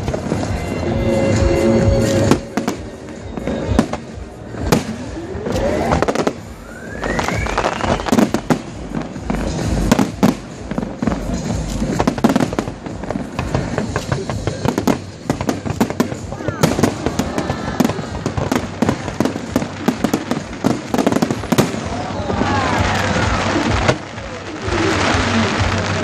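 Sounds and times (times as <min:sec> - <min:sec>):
firework bangs and crackling: 0:00.0 - 0:26.0
whistling firework shell rising: 0:05.4 - 0:08.3.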